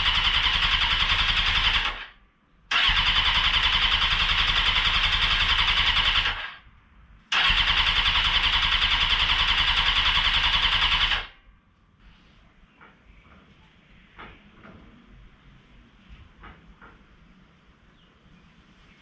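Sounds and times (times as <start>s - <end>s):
electric starter cranking engine: 0.0s - 6.6s, 7.3s - 11.3s.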